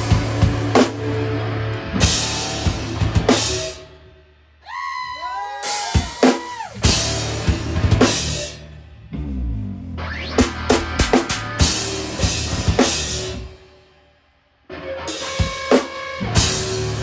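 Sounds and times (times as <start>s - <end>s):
drum hits and cymbal crashes: 0.0s - 1.4s, 2.0s - 3.8s, 5.7s - 8.6s, 10.4s - 13.4s
live rock band playing: 0.0s - 3.9s, 5.6s - 8.7s, 10.3s - 13.5s, 14.8s - 17.0s.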